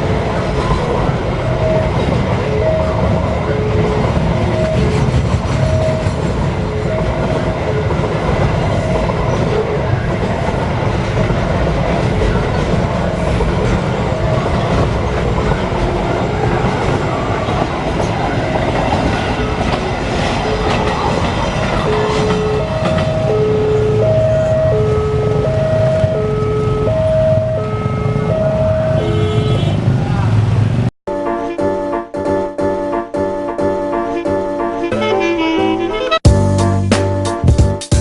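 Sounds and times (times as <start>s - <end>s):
crossing alarm two-note signal: 0.7s - 10.0s, 14.0s - 16.6s, 21.8s - 29.7s.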